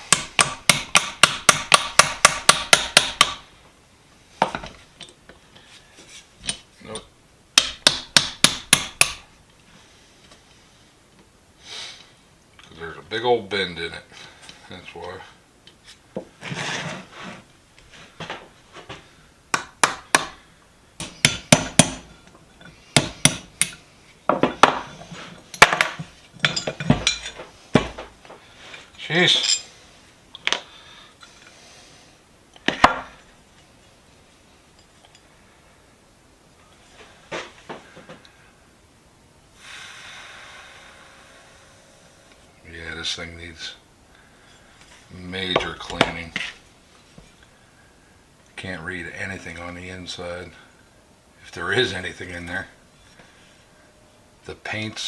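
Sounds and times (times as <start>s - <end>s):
hammer striking metal: 0.1s - 3.4s, 7.6s - 9.2s, 21.0s - 22.1s.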